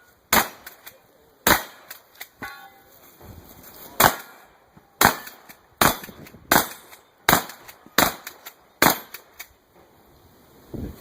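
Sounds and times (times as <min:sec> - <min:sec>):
shotgun shots: 0:00.3 - 0:00.8, 0:01.4 - 0:02.1, 0:04.0 - 0:04.4, 0:05.0 - 0:09.4.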